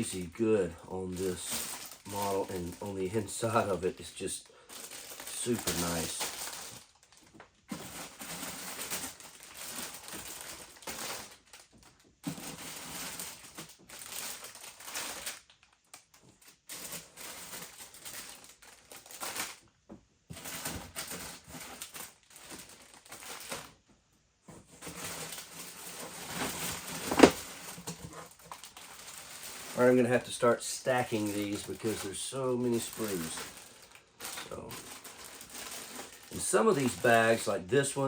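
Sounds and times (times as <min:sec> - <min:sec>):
plastic bags crinkling: 0:00.0 - 0:19.7, 0:20.3 - 0:23.8, 0:24.6 - 0:38.0
plastic parts clacking: 0:24.7 - 0:29.9.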